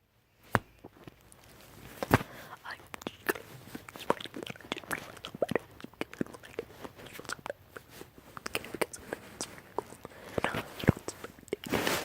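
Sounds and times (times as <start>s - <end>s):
wet lip and tongue clicks: 2.6s - 11.8s
breathy hiss: 6.4s - 12.0s.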